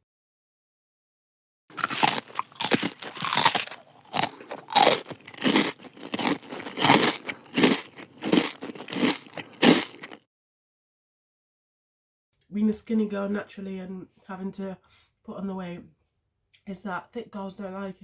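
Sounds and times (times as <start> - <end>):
person chewing crunchy food: 1.7 - 10.2.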